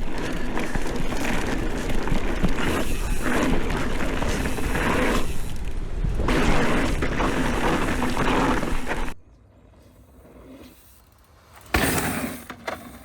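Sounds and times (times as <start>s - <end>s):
bike tyres rumbling over dirt: 0.0s - 9.2s
wind on microphone: 0.0s - 9.2s.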